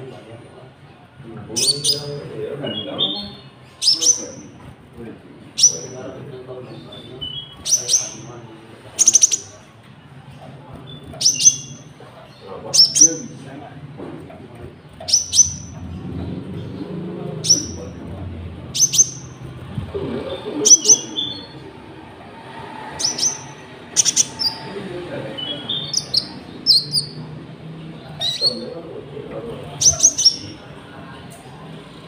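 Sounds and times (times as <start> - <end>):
songbird chirping: 0.8 - 14.0, 14.6 - 32.0.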